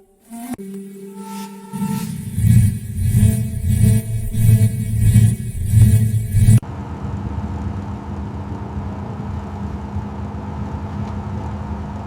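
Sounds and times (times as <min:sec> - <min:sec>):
pulsing engine: 0:01.4 - 0:06.6.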